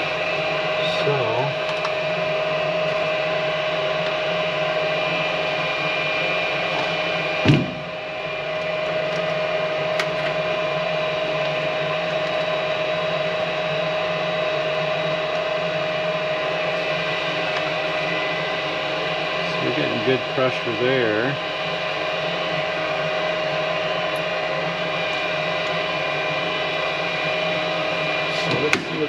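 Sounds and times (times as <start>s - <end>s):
furnace inducer motor humming: 0.0s - 29.0s
sharp knock: 7.4s - 7.8s.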